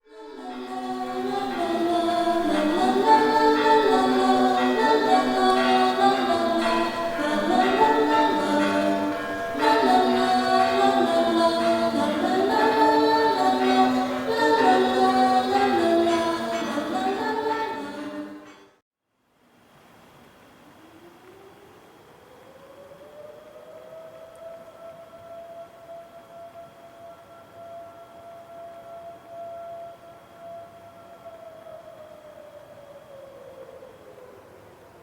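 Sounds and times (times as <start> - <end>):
choir singing a cappella: 0.0 - 18.6.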